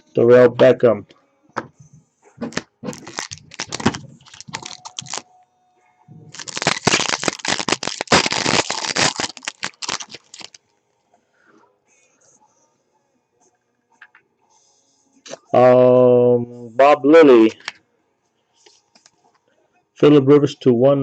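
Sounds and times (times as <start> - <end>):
wrapper tearing and crinkling: 2.5 - 5.2, 6.3 - 10.6.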